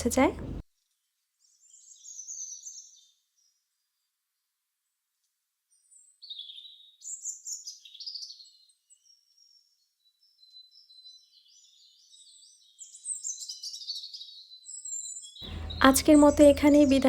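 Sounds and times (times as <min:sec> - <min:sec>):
small birds chirping: 0:01.4 - 0:03.6, 0:05.7 - 0:17.0.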